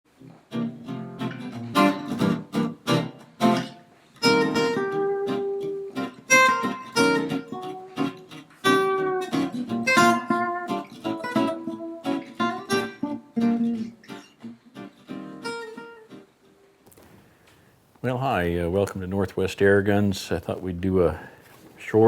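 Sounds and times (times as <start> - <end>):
acoustic guitar: 0.1 - 19.3.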